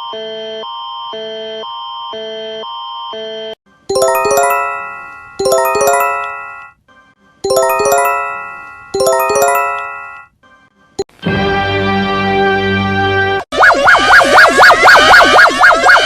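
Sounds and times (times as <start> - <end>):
electronic ding-dong chime: 3.9 - 6.7, 7.5 - 10.3.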